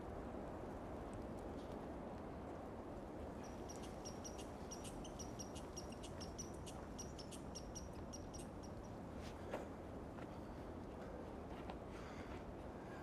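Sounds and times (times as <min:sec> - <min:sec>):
small bird chirping: 0:03.5 - 0:08.9.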